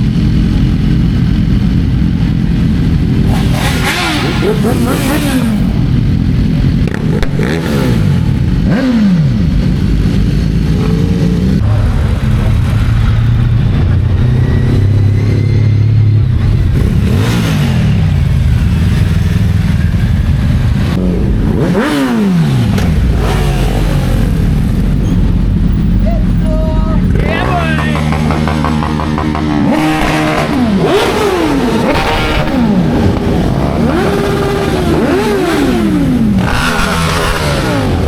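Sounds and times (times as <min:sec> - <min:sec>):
motorcycle engines idling: 0:00.0 - 0:38.0
motorcycles passing by: 0:00.0 - 0:38.0.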